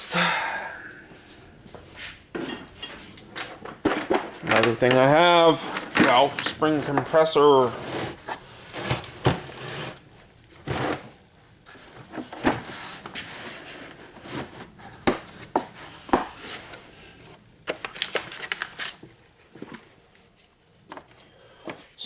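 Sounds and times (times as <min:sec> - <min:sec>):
metal parts clicking and clunking: 0:02.3 - 0:09.6.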